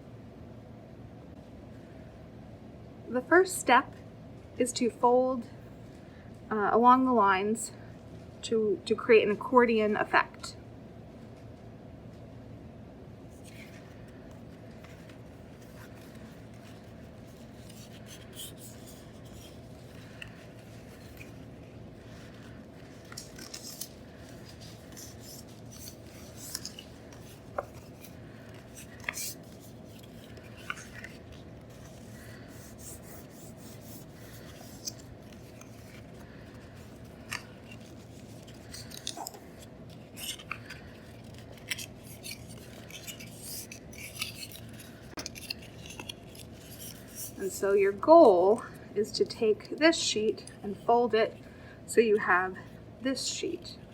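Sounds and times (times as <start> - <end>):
steady low hum: 0.0 - 53.9
paper rustling and creasing: 13.3 - 47.5.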